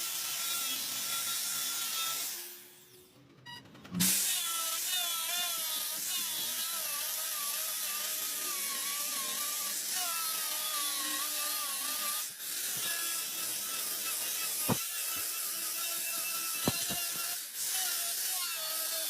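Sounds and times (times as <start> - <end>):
high-speed power tool whine: 4.0 - 19.0.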